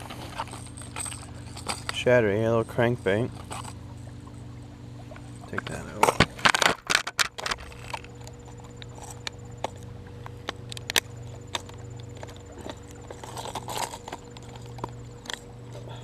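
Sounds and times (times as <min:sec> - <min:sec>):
low hum: 0:00.0 - 0:16.0
plastic packaging crackling: 0:06.3 - 0:08.2.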